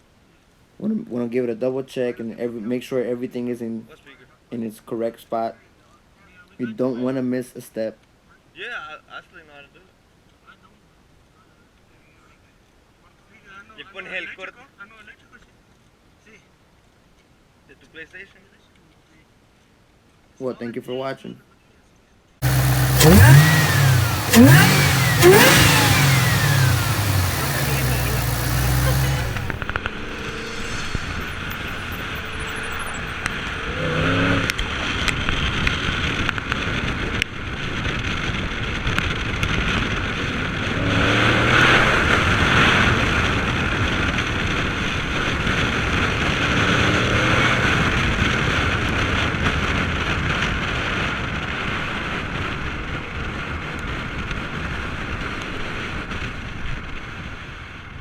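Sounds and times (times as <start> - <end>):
car engine revving: 22.4 - 35.7, 40.6 - 43.3.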